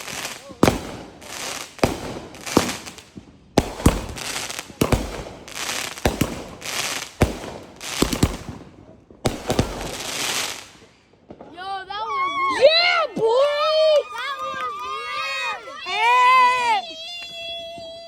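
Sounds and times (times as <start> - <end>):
firework bangs: 0.0 - 11.5.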